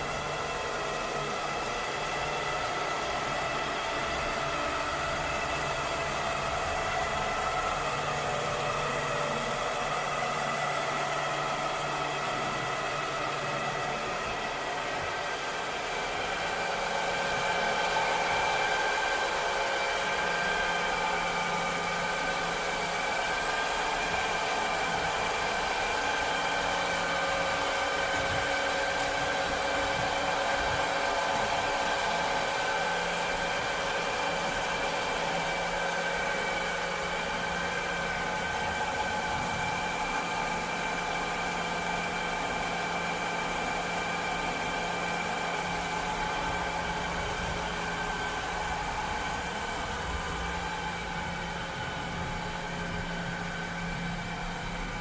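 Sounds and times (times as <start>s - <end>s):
cleaning robot motor hum: 0.0s - 55.0s
hiss: 15.9s - 42.7s.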